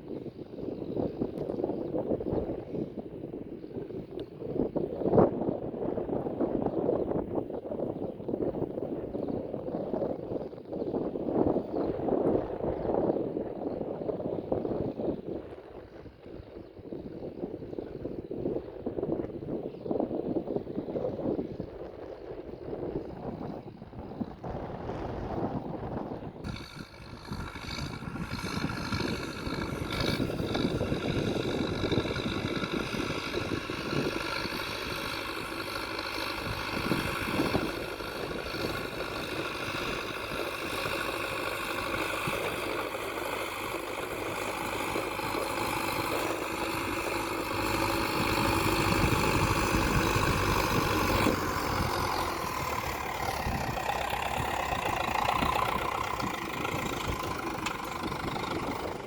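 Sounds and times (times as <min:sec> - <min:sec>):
tractor engine running: 0:22.4 - 0:59.0.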